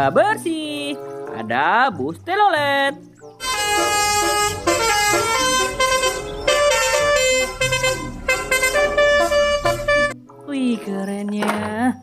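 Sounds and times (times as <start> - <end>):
multi-note bus air horn tune: 3.4 - 10.2.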